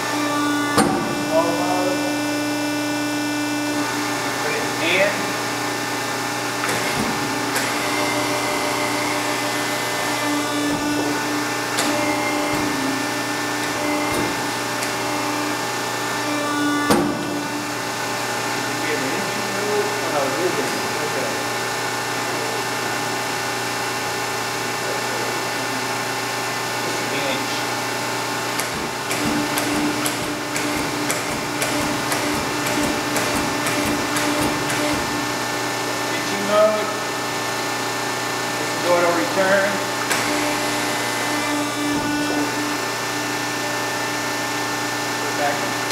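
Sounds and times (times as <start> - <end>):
press brake humming: 0.0 - 1.9, 6.5 - 15.8, 16.7 - 17.9, 28.0 - 35.7
hydraulic motor hum: 0.0 - 45.9
sharp machine clicks: 28.6 - 35.1.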